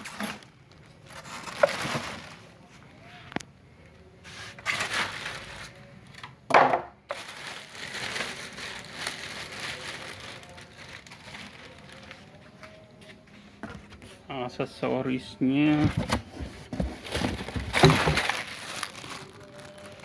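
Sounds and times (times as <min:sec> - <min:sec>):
packaging rustling and crinkling: 0:00.0 - 0:02.8, 0:03.8 - 0:06.2, 0:07.1 - 0:12.9, 0:15.7 - 0:20.0
packaging crunch: 0:07.1 - 0:12.4, 0:16.9 - 0:20.0.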